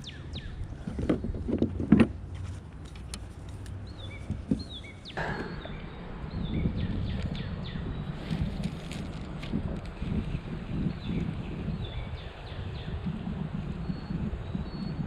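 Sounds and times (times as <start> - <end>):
low outdoor rumble: 0.0 - 15.0
knocks and bumps: 0.8 - 2.2
bird calling: 3.9 - 8.4.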